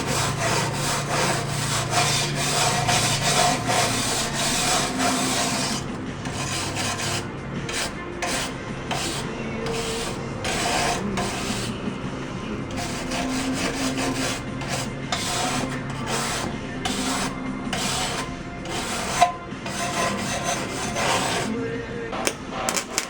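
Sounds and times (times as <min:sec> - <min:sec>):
welder crackling: 0:00.0 - 0:11.7, 0:22.2 - 0:23.0.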